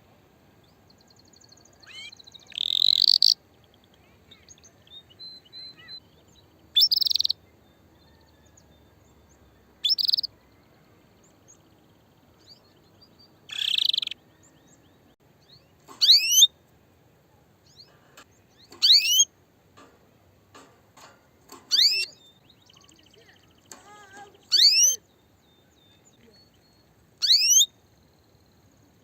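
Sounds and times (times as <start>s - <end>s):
canary chirping: 1.8s - 3.4s, 4.4s - 7.4s, 9.4s - 10.3s, 11.9s - 14.5s, 15.4s - 16.5s, 17.6s - 19.3s, 21.5s - 27.8s.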